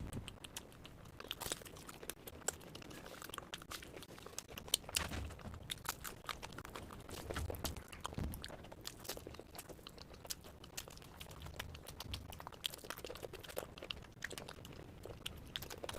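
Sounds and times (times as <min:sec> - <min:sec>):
person chewing crunchy food: 0:00.0 - 0:15.9.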